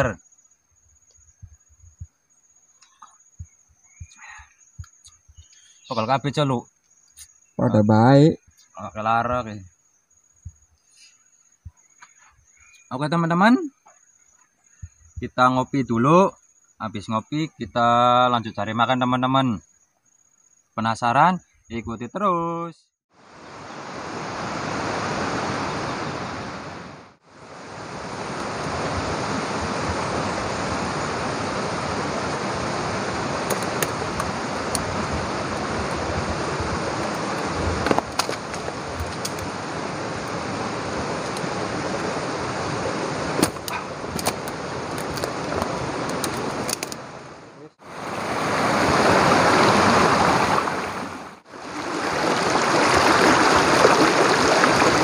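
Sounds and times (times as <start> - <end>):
stream water rushing: 23.2 - 55.0.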